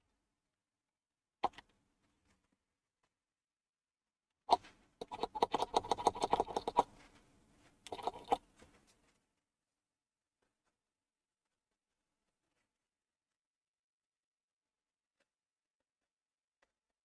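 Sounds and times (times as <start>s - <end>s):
computer parts clicking and tapping: 5.0s - 6.8s.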